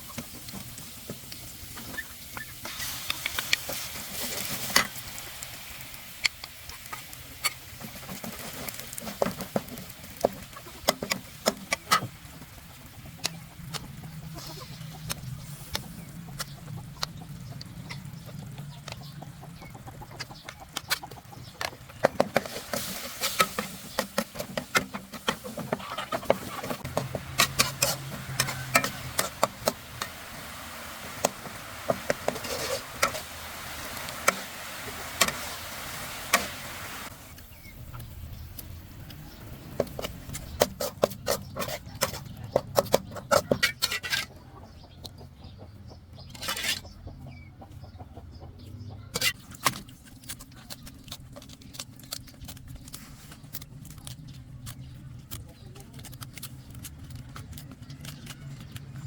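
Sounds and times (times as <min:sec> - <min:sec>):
chickens clucking: 0:00.0 - 0:59.0
cooking utensils clicking: 0:21.6 - 0:35.7.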